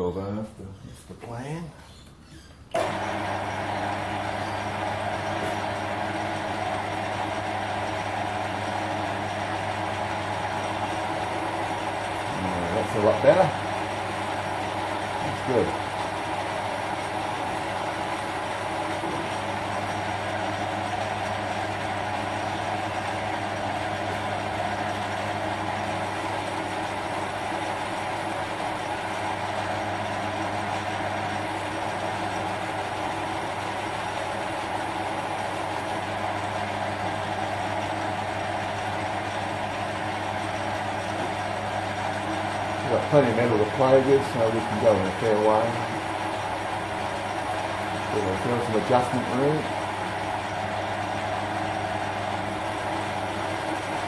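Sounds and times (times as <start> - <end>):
motor hum: 2.0 - 54.0
metal lathe cutting: 2.8 - 54.0.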